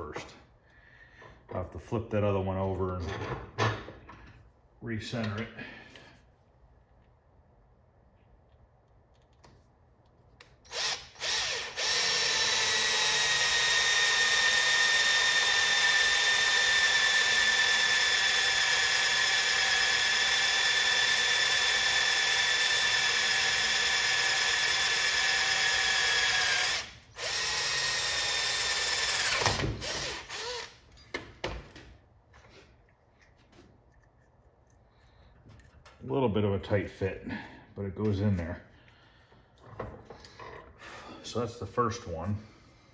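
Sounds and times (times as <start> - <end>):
power drill boring through wood: 10.7 - 30.8.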